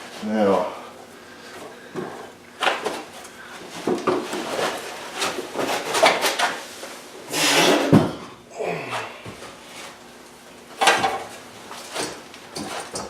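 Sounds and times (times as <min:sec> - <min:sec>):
tools scraping and rattling: 0:02.0 - 0:06.7, 0:10.8 - 0:13.0.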